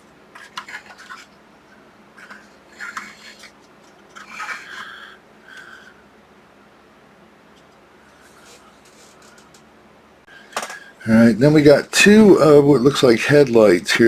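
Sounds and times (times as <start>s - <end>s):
plastic parts clicking and tapping: 10.5s - 10.8s.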